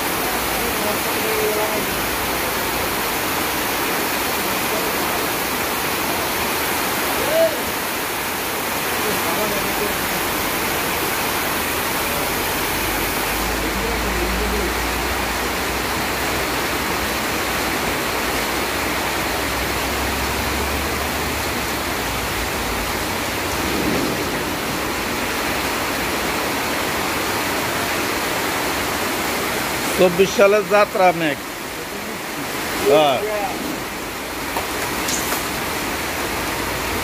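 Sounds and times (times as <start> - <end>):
heavy rain falling: 0.0 - 37.0
low rumble: 22.2 - 26.4.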